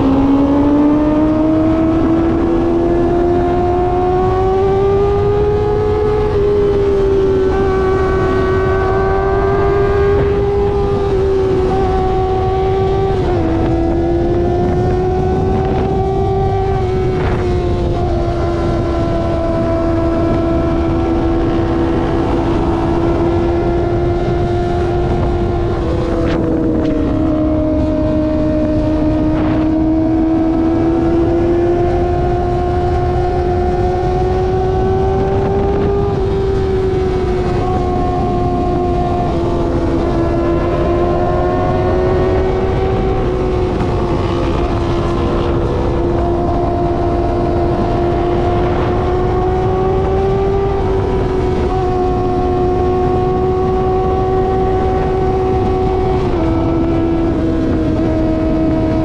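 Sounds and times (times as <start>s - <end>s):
motorcycle engine at high revs: 0.0s - 59.0s.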